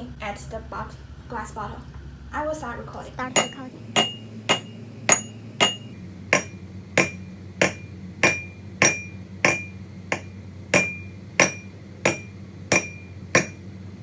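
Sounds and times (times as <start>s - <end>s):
glass bottle taps: 3.4s - 13.6s.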